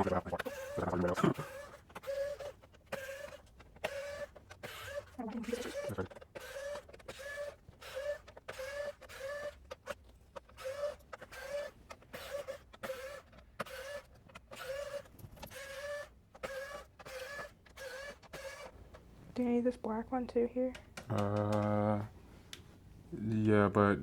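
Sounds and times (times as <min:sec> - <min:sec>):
screwdriver squeaking on screws: 0:00.0 - 0:18.8.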